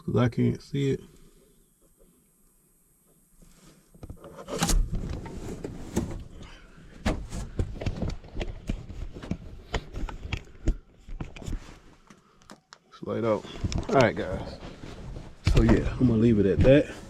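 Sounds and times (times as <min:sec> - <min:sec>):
objects being handled: 0:03.4 - 0:17.0.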